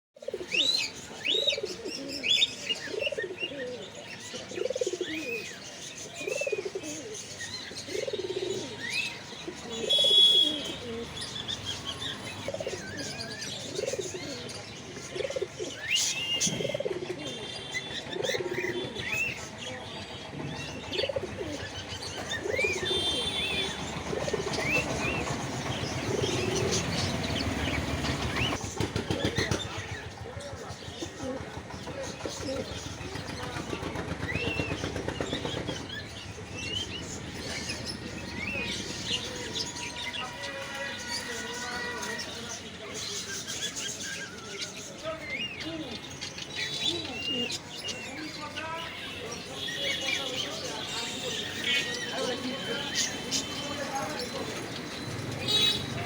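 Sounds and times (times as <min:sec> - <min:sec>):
pigeons cooing: 0:00.2 - 0:39.7.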